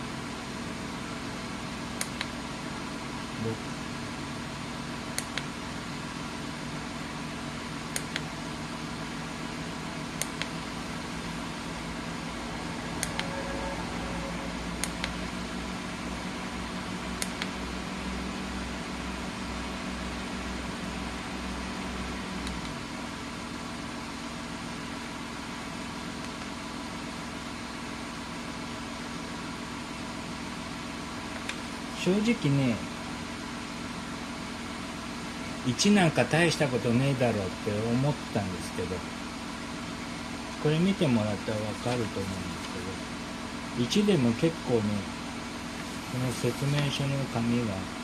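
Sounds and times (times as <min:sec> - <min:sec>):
fan motor humming: 0:00.0 - 0:48.0
fan button clicking: 0:13.0 - 0:13.3.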